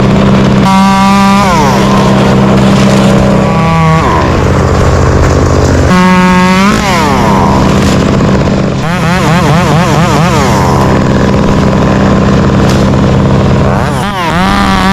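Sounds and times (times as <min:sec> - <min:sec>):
chainsaw revving: 0:00.0 - 0:14.9
large engine droning: 0:00.0 - 0:14.9.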